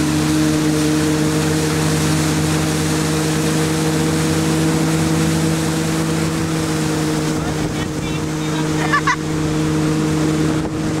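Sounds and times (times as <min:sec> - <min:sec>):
motorboat engine running: 0:00.0 - 0:11.0
water rushing past hull: 0:00.0 - 0:11.0
wind noise: 0:10.4 - 0:11.0.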